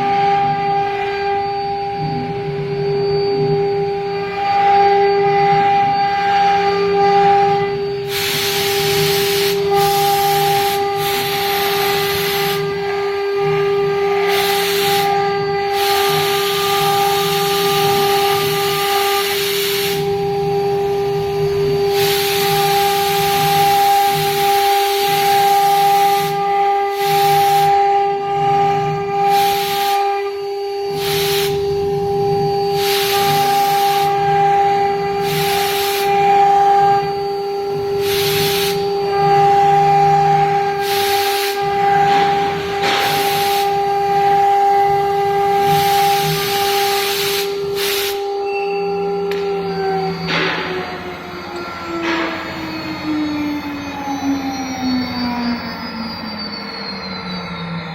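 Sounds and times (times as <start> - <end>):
router spindle whine: 0.0 - 57.9
hissing cutting noise: 36.8 - 48.3, 48.9 - 54.4.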